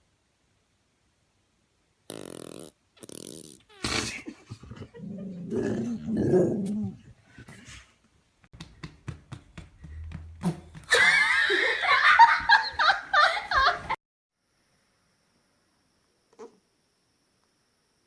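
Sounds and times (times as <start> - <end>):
dog growling: 3.8 - 7.2.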